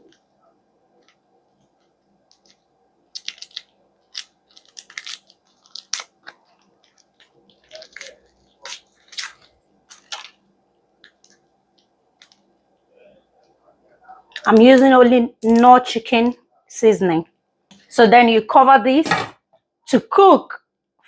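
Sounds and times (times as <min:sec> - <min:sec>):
seasoning packet crinkling: 0:03.1 - 0:10.4.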